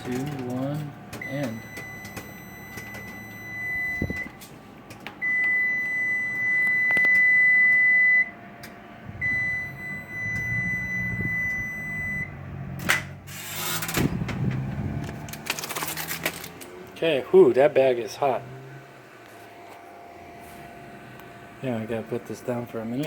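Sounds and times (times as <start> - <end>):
long high oven beeps: 0.8 - 4.4, 5.2 - 12.4.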